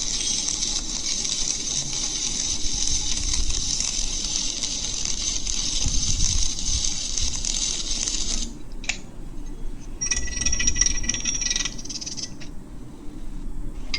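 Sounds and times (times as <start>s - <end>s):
welding arc crackling: 0.0s - 8.5s.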